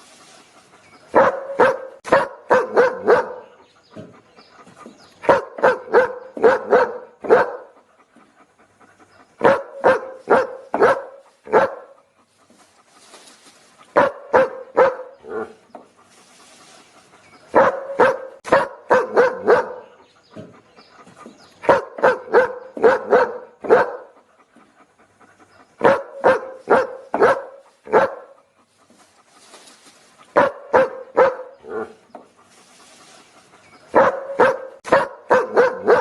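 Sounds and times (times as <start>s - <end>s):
dog barking: 1.1s - 3.6s, 5.2s - 7.8s, 9.4s - 12.0s, 13.9s - 15.6s, 17.5s - 20.0s, 21.6s - 24.2s, 25.8s - 28.4s, 30.3s - 32.0s, 33.9s - 36.0s.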